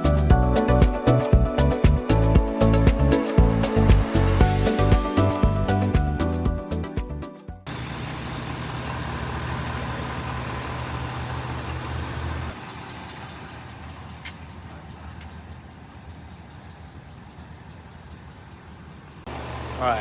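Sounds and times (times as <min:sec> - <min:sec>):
vehicle engine and road drone: 0:07.7 - 0:20.0.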